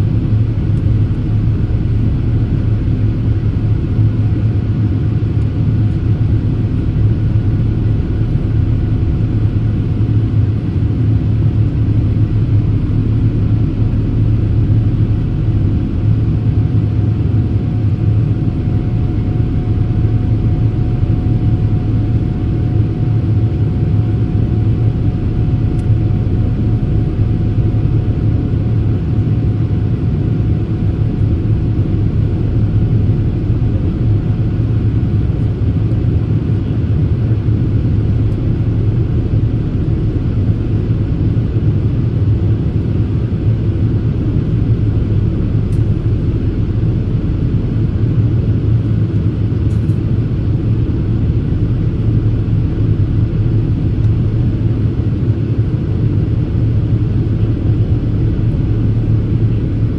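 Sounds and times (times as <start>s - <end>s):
airflow over fuselage: 0.0s - 59.9s
airplane cabin engine rumble: 0.0s - 59.9s.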